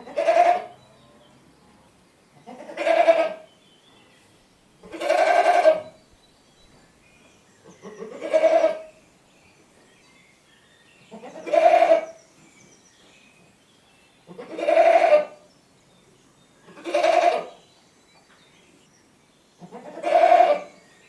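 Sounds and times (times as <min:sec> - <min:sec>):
goat bleating: 0:00.0 - 0:00.7, 0:02.5 - 0:03.4, 0:04.9 - 0:05.9, 0:07.8 - 0:08.9, 0:11.2 - 0:12.1, 0:14.3 - 0:15.4, 0:16.8 - 0:17.5, 0:19.7 - 0:20.7.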